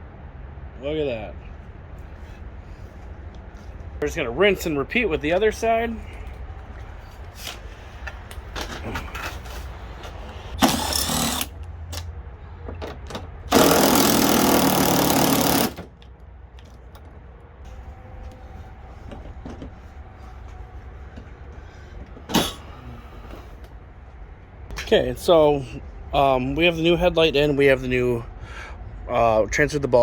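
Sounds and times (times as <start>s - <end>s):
low steady rumble: 0.0s - 30.0s
power tool running: 10.6s - 11.6s, 13.5s - 15.9s.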